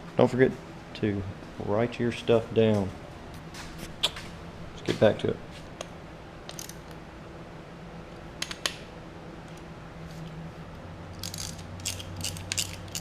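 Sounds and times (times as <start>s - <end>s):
faint steady hum: 0.0s - 13.0s
metallic clicks of tools: 6.5s - 7.0s, 11.2s - 13.0s.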